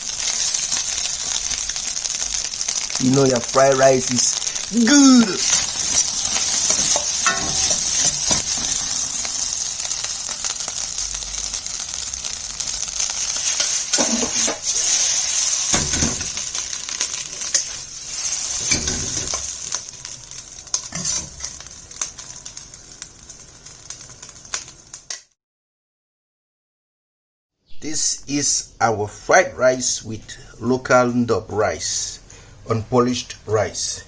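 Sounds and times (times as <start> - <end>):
rice popping: 0.0 - 25.2
rice sizzling in a hot pan: 0.0 - 25.3
utensil scraping and knocking pan: 5.5 - 8.9, 13.6 - 15.0, 18.5 - 19.5.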